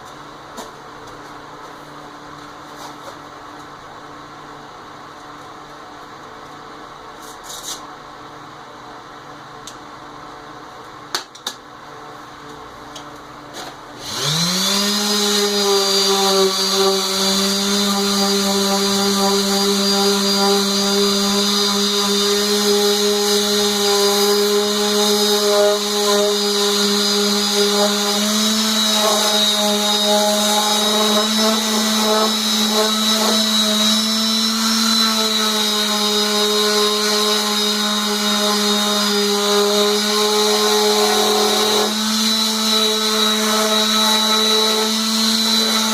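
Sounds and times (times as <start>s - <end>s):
power tool motor humming: 14.0s - 45.9s.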